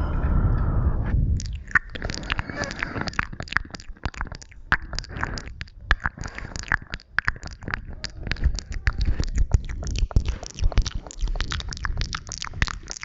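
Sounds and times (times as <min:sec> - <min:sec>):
low rumble: 0:00.0 - 0:03.2
wet mouth clicks and smacks: 0:01.4 - 0:13.0.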